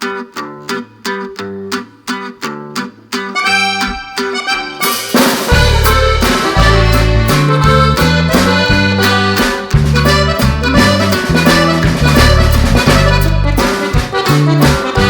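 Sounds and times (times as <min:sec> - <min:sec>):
reedy melody: 0:03.3 - 0:15.0
background music with beat: 0:03.4 - 0:15.0
bouncing bass line: 0:05.5 - 0:15.0.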